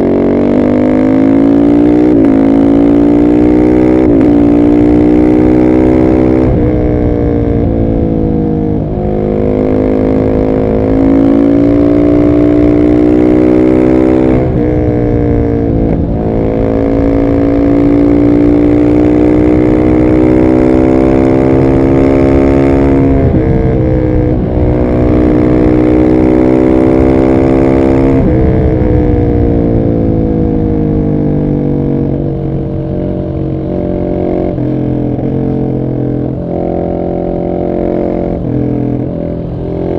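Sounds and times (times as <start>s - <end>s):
motorcycle engine under full throttle: 0.0s - 39.9s.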